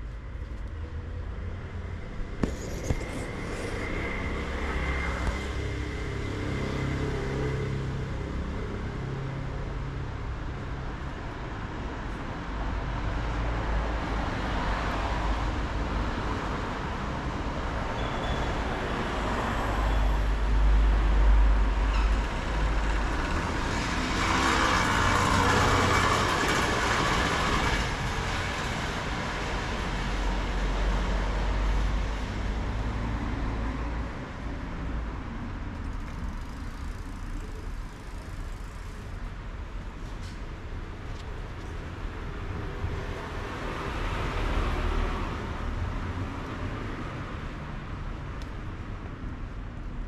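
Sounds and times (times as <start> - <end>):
road traffic: 0.0 - 50.0.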